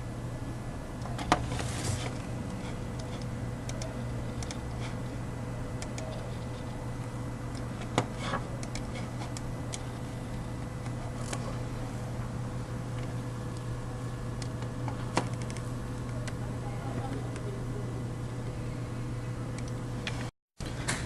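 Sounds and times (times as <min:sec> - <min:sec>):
mouse and keyboard clicks: 0:07.6 - 0:09.8.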